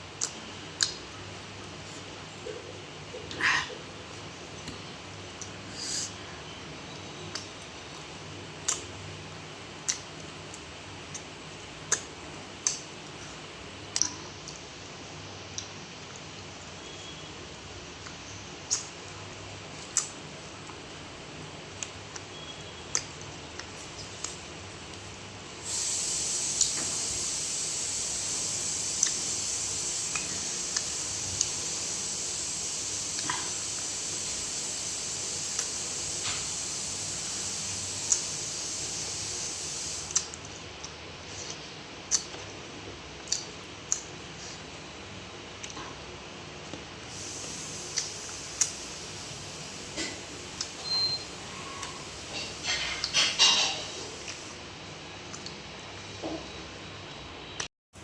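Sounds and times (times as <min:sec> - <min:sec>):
mouth clicks and smacks: 0:00.2 - 0:01.0, 0:08.6 - 0:08.9, 0:09.8 - 0:12.9, 0:18.0 - 0:19.0, 0:19.8 - 0:20.2, 0:40.1 - 0:42.5, 0:43.2 - 0:44.1, 0:55.3 - 0:55.6
steady hiss: 0:23.8 - 0:40.3, 0:47.1 - 0:54.6.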